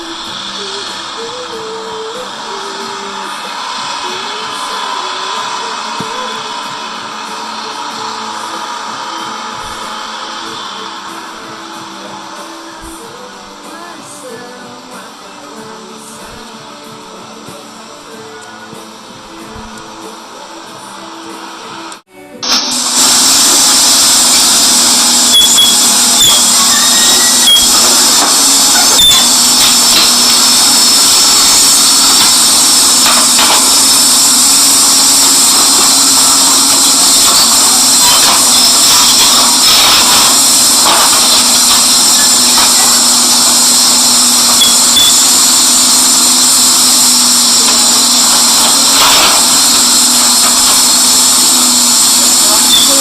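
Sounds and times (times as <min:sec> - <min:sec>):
excavator engine and hydraulics: 0:00.0 - 0:53.0
short squeaks and clicks: 0:25.2 - 0:30.2.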